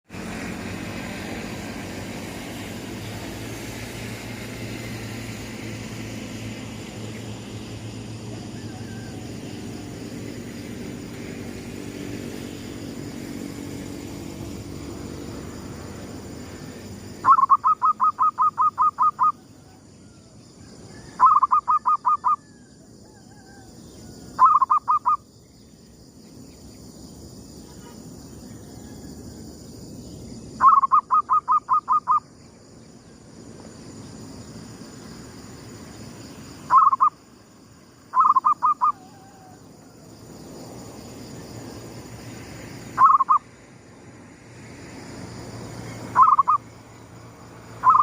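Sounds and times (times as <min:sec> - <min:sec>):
dove cooing: 0:17.2 - 0:19.8, 0:20.9 - 0:22.5, 0:23.1 - 0:25.2, 0:36.7 - 0:37.1, 0:38.2 - 0:39.6, 0:43.0 - 0:43.4, 0:46.2 - 0:46.6.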